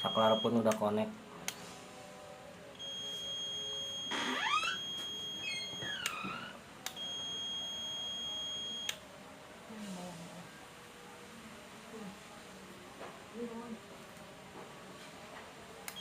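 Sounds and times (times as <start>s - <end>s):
multimeter continuity beep: 0.0s - 0.7s, 2.8s - 6.1s, 7.0s - 9.0s.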